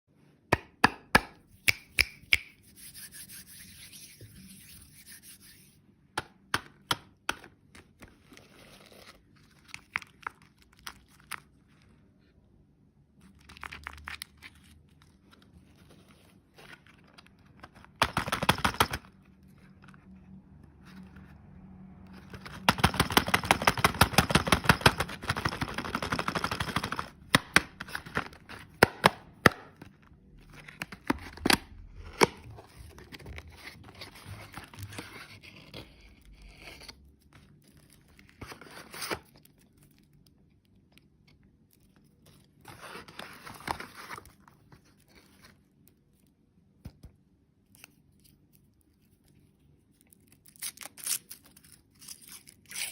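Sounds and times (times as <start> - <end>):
wrapper taps and clicks: 17.8 - 19.1, 22.3 - 29.9.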